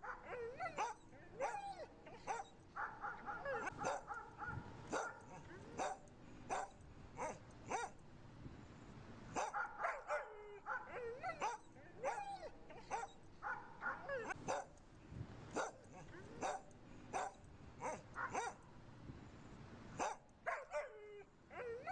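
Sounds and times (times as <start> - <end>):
dogs whining and yipping: 0.0 - 5.2, 9.4 - 14.7, 21.5 - 21.9
dogs barking: 0.0 - 8.0, 9.3 - 14.8, 15.5 - 18.7, 20.0 - 21.9.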